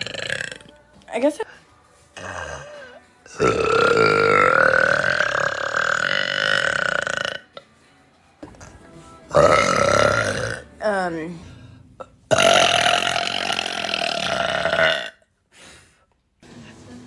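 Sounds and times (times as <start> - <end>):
woman burping: 0.0 - 0.7, 2.2 - 7.6, 9.3 - 10.6, 12.0 - 15.3.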